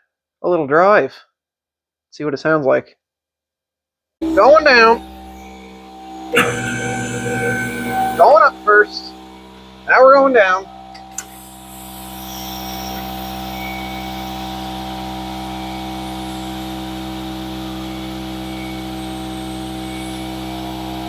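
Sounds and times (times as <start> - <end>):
hydraulic hiss: 4.2 - 16.6
hydraulic car lift humming: 4.2 - 21.0.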